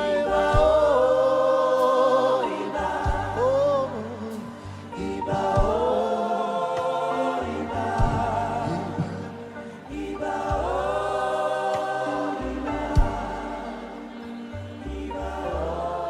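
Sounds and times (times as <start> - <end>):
band with bass and drums: 0.0 - 2.0, 2.8 - 6.2, 7.7 - 11.1, 12.5 - 14.8
choir singing: 0.0 - 16.0.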